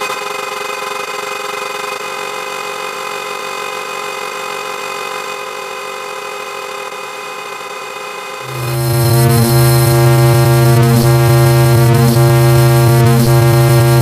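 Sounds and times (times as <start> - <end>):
harsh car horn tone: 8.4 - 14.0.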